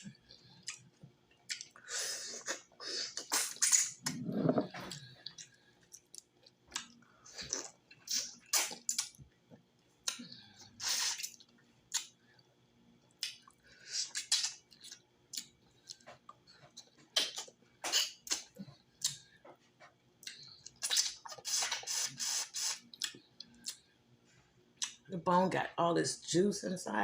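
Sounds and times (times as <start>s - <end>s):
wet slurping and lip-smacking: 2.4s - 6.2s, 13.2s - 15.5s, 20.2s - 23.8s.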